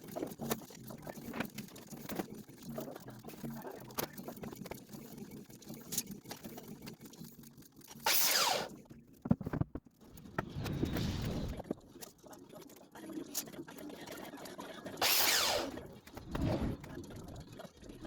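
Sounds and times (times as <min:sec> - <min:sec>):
power tool whirring down: 0:08.1 - 0:08.7, 0:15.0 - 0:15.8.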